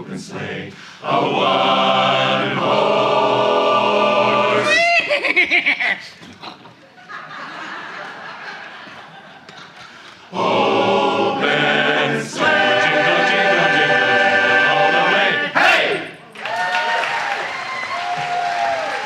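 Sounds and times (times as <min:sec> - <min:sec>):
a cappella chorus singing: 0:00.0 - 0:04.8, 0:10.1 - 0:16.2.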